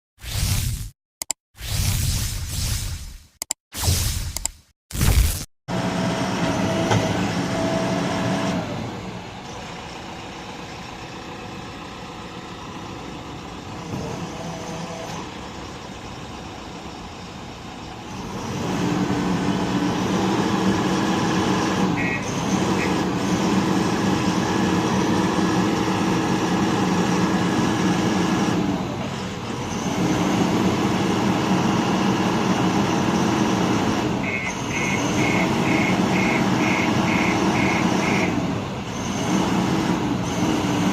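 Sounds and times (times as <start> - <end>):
diesel engine running: 5.7 - 40.9.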